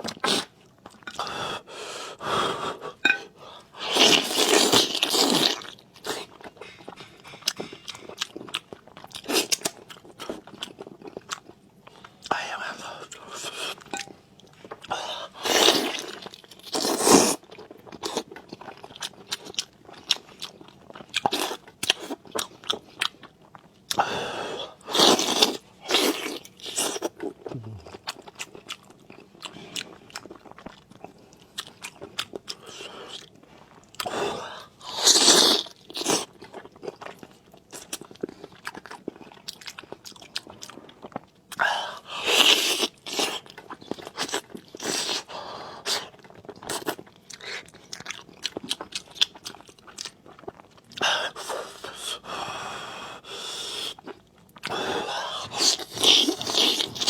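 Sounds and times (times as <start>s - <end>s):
person chewing: 2.8s - 12.4s, 24.8s - 41.6s, 42.2s - 52.2s, 55.4s - 57.0s.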